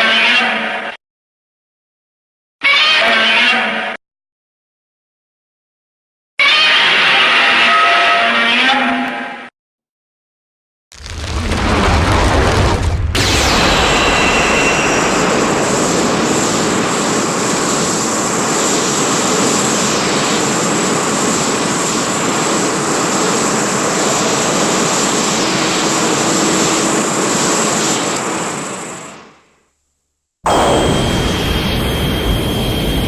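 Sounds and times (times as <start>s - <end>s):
loud rushing roar: 11.0s - 28.7s, 30.5s - 33.0s.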